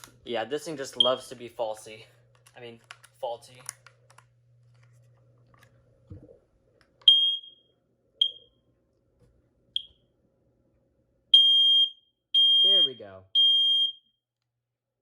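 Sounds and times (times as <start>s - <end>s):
smoke alarm chirps: 7.1s - 8.6s, 11.3s - 14.2s.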